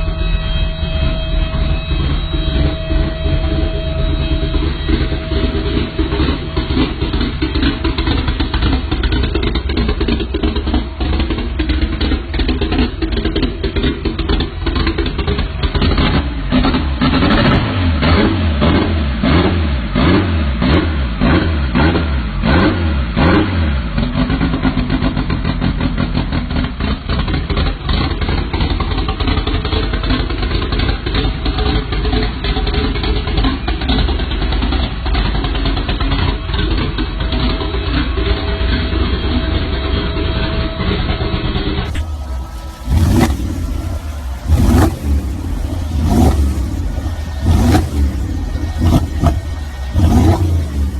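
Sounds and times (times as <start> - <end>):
vehicle engine revving: 2.5 - 24.5, 41.8 - 50.9.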